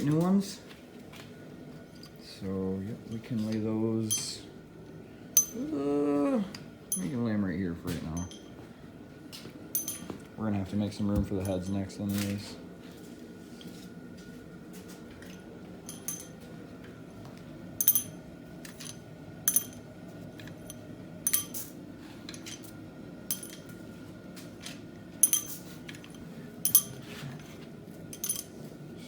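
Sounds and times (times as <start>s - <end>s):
faint steady hum: 0.0s - 29.0s
metal rods clinking: 5.4s - 5.7s, 6.9s - 7.2s, 9.8s - 10.2s, 15.2s - 16.5s, 17.8s - 21.7s, 23.3s - 23.8s, 24.6s - 27.1s, 28.1s - 28.6s.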